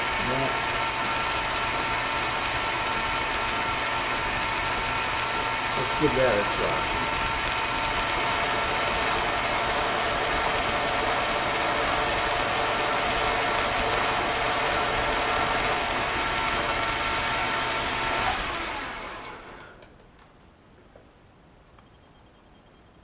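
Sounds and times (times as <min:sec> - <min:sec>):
metal lathe whining: 0:00.0 - 0:19.8.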